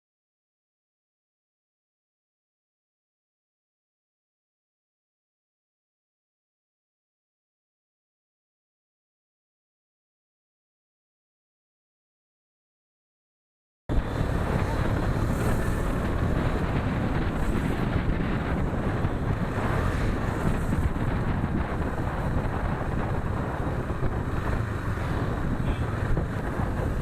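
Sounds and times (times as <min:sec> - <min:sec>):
motorcycle engine and road rumble: 0:13.9 - 0:27.0
wind buffeting microphone: 0:13.9 - 0:27.0.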